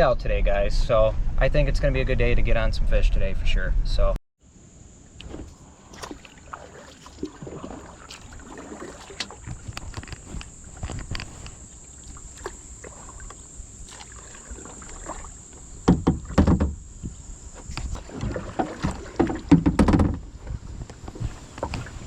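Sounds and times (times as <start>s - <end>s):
water splashes from paddling: 5.2s - 22.0s
paddle knocking on plastic hull: 15.8s - 22.0s.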